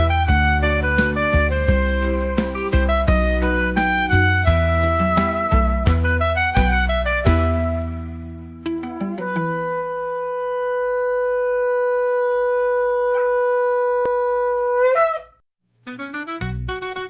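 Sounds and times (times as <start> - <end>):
keyboard music: 0.0 - 11.9, 15.8 - 17.0
shofar blast: 9.2 - 15.3.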